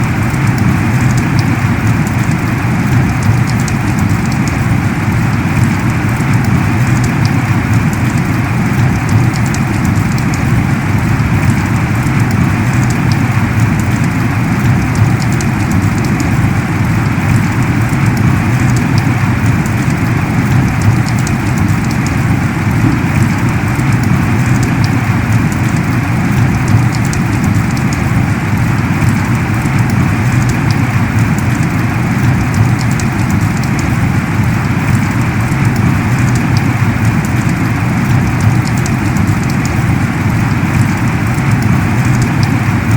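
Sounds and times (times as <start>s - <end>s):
heavy rain pouring: 0.0s - 42.9s
raindrop ticks: 0.0s - 42.9s.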